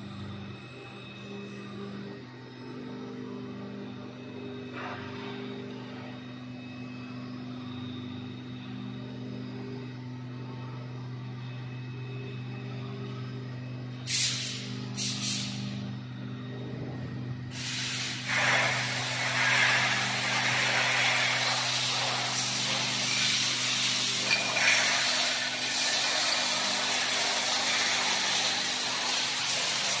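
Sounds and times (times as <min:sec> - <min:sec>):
machine hum: 0:00.0 - 0:30.0
loud continuous hiss: 0:17.5 - 0:30.0.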